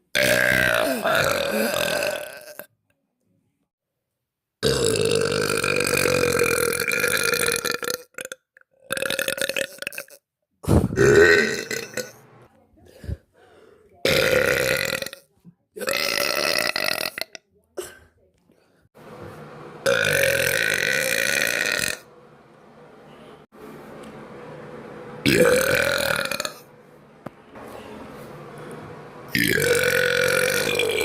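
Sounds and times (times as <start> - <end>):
girl burping: 0.2 - 2.6.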